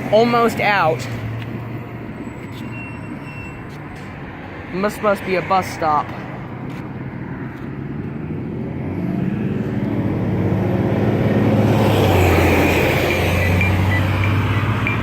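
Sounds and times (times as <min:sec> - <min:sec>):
vehicle engine passing: 0:06.1 - 0:15.0.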